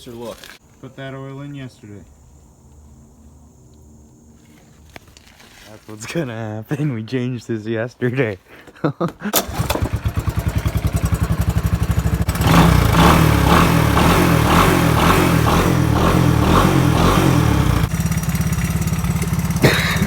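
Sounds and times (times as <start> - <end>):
motorcycle engine idling and revving: 9.4 - 20.0.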